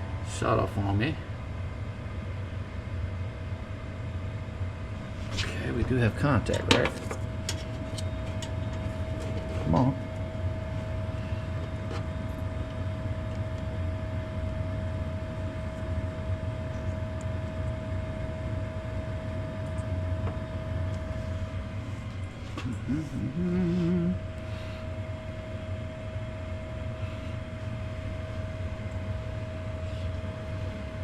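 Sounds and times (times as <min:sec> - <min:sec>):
gas furnace running: 0:00.0 - 0:31.0
person humming: 0:22.6 - 0:24.3.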